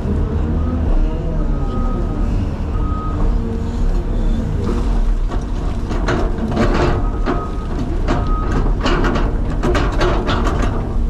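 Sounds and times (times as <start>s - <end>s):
excavator diesel engine running: 0.0s - 11.0s
bucket and tracks clanking: 3.0s - 11.0s.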